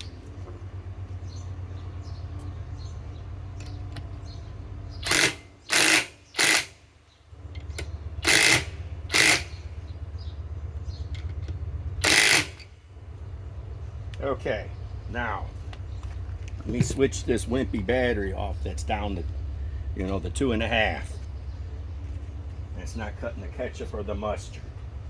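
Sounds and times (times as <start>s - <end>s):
impact wrench hammering: 5.0s - 6.8s, 8.2s - 9.6s, 12.0s - 12.7s
loud wrench bursts: 5.0s - 6.9s, 7.8s - 9.8s, 12.0s - 12.8s.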